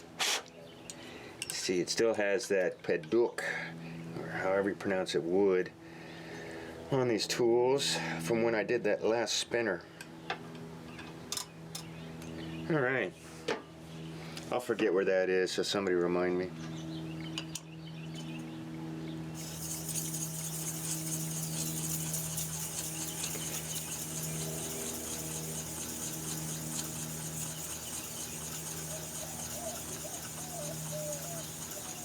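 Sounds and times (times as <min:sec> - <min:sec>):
tool grinding on stone: 0:00.2 - 0:00.5, 0:19.4 - 0:32.0
sharpener motor humming: 0:19.4 - 0:32.0.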